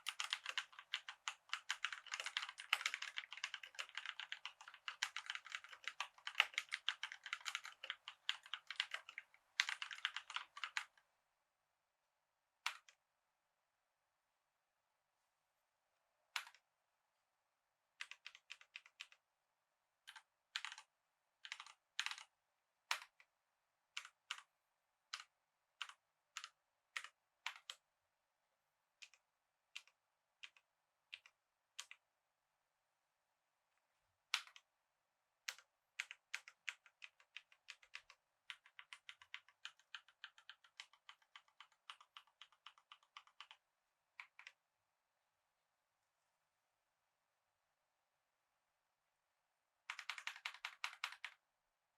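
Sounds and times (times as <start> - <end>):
typing on mechanical keyboard: 0.0 - 11.0, 18.0 - 19.2, 20.1 - 22.3, 22.9 - 23.3, 24.0 - 24.5, 25.1 - 27.8, 29.8 - 30.6, 35.5 - 43.6, 44.2 - 44.6, 49.9 - 51.4.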